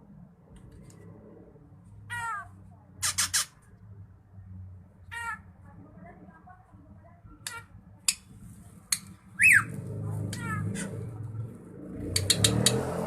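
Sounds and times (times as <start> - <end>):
bird singing: 9.4 - 9.7.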